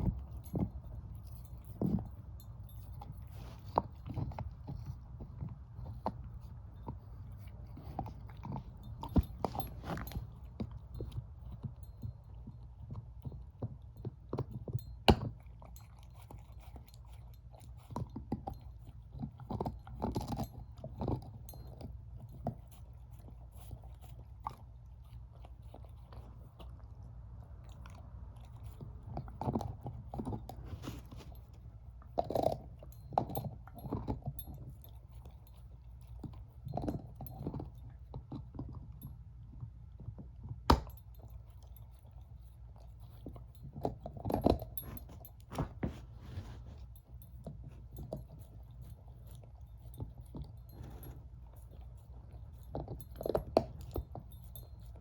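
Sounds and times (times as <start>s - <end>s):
dog chewing a bone: 0.0s - 55.0s.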